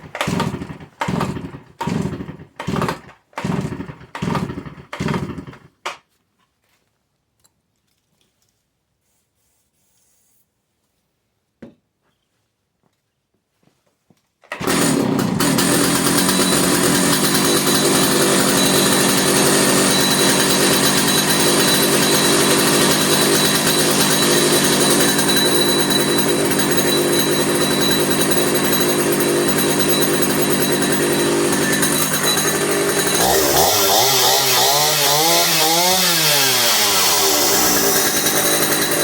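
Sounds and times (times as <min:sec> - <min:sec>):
chainsaw engine running: 0:00.0 - 0:05.7, 0:14.5 - 0:39.0.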